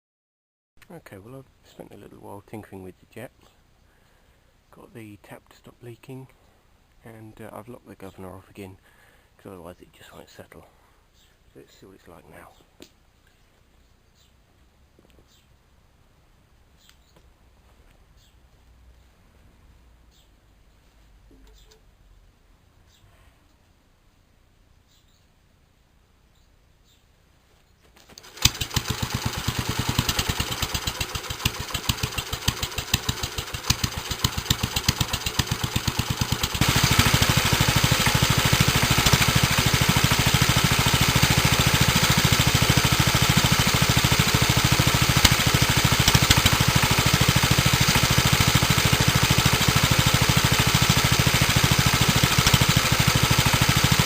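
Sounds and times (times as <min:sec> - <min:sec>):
stationary engine running: 0:28.2 - 0:54.0.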